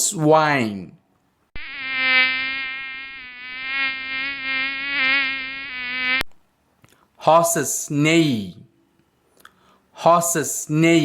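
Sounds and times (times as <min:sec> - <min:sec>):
mosquito whining: 0:01.6 - 0:06.2.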